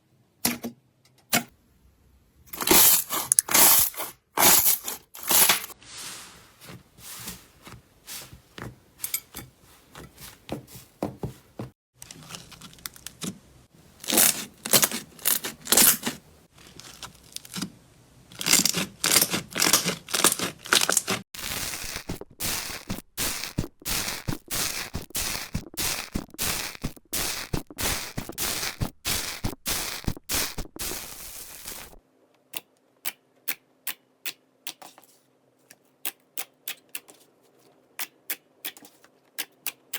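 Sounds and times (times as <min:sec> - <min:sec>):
slime crackling and popping: 0:18.4 - 0:32.0.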